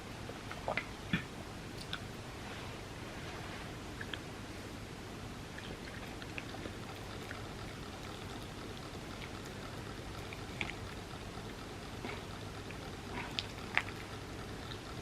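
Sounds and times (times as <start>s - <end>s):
wet mouth clicks from chewing: 5.6s - 15.0s.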